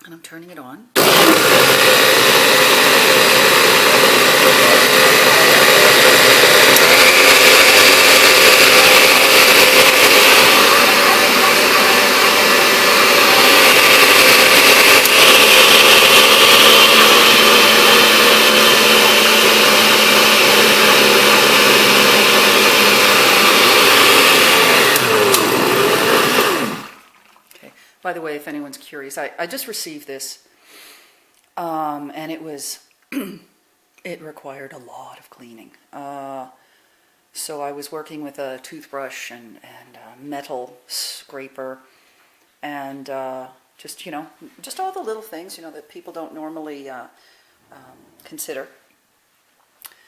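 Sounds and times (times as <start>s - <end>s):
blender motor whirring: 1.0s - 27.1s.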